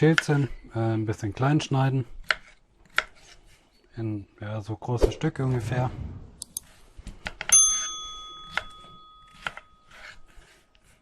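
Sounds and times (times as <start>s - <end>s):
metal object ringing: 7.5s - 9.9s.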